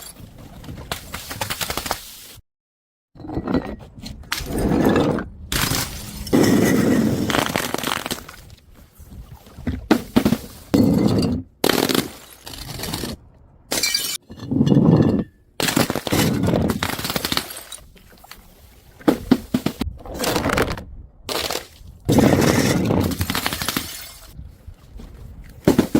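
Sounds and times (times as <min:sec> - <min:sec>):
glass bottles smashing: 0:13.7 - 0:14.3.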